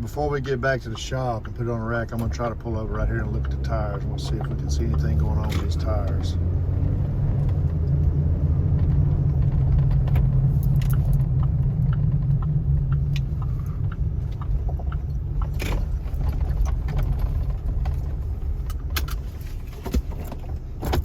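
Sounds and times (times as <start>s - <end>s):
tire and road noise drone: 0.0s - 21.0s
light clicks and rattles: 8.8s - 21.0s.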